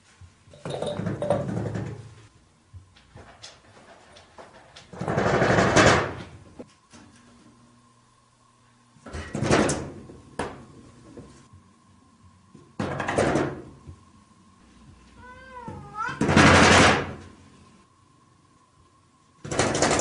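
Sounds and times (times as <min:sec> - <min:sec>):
cat meowing: 0:15.2 - 0:16.3.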